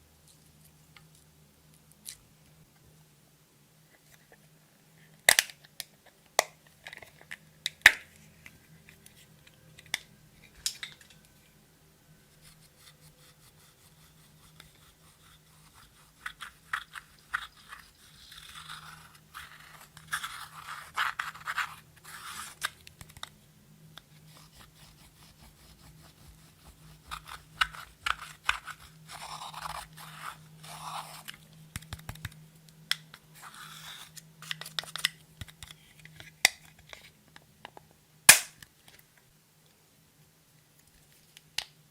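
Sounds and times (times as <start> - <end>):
slime squishing and scraping: 12.4 - 23.2, 24.1 - 31.5.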